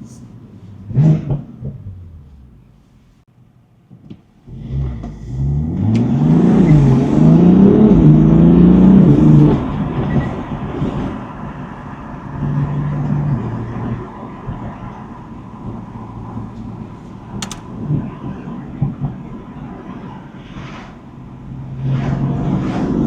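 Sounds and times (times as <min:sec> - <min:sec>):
car engine accelerating: 0:00.3 - 0:03.0, 0:04.4 - 0:19.0.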